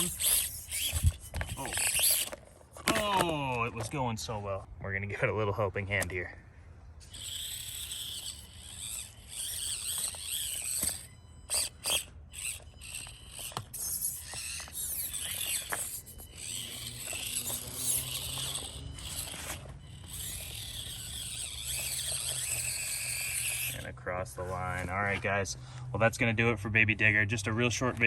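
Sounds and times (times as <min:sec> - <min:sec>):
toy car knocking over obstacles: 0:00.0 - 0:03.3, 0:07.2 - 0:23.8
small electric motor whining: 0:00.0 - 0:03.4, 0:07.0 - 0:25.8.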